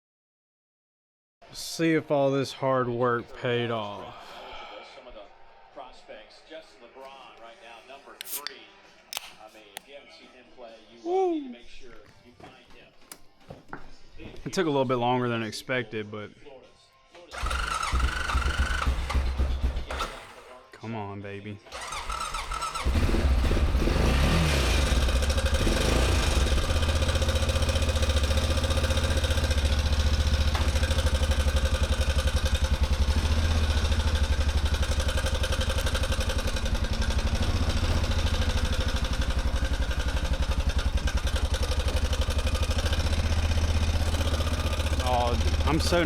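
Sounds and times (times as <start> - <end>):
atv engine cranking and idling: 17.3 - 20.4, 21.7 - 46.0.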